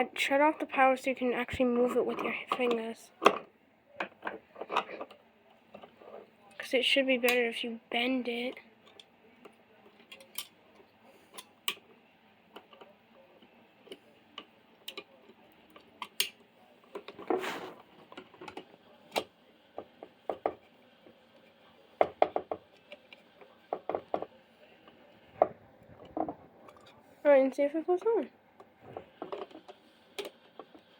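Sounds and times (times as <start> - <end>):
noisy scrape: 17.3 - 17.8.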